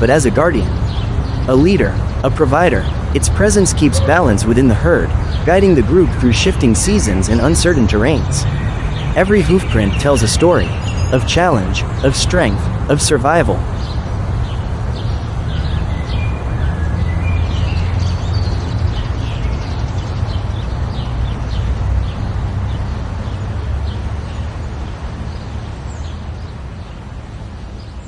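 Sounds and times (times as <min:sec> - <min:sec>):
steady low rumble: 0:00.0 - 0:14.2
small birds chirping: 0:00.0 - 0:28.0.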